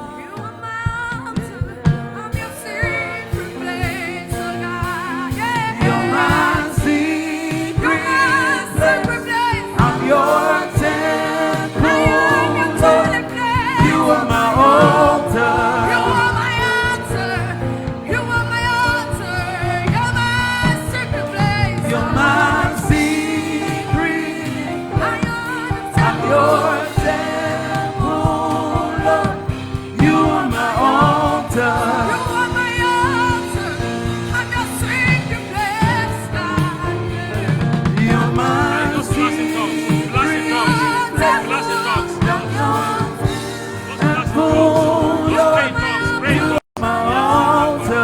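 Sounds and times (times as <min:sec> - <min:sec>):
gospel singers with choir: 0:00.0 - 0:48.0
instrumental backing: 0:00.0 - 0:48.0.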